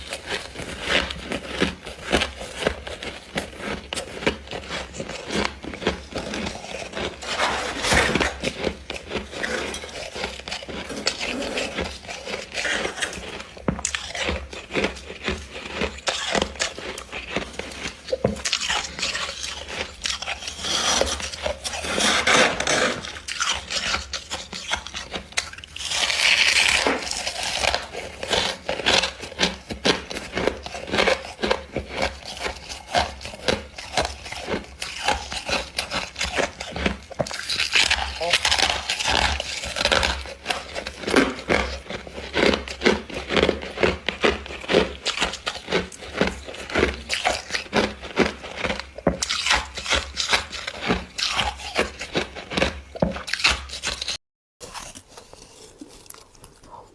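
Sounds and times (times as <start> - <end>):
frost scraping: 0.0 - 25.1
frost crunching while chewed: 0.0 - 56.9.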